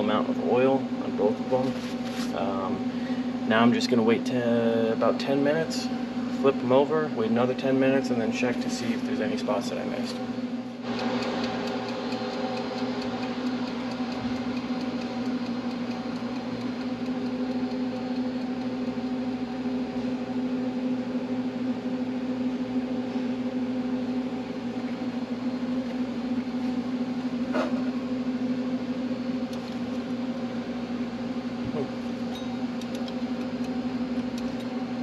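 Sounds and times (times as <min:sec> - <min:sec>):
electric motor hum: 0:08.2 - 0:35.0.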